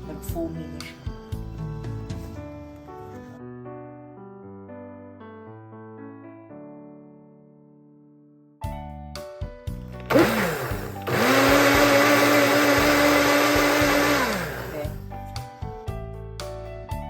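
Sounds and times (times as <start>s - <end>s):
piano background music: 0.0s - 17.0s
electric blender motor whine: 10.0s - 15.0s.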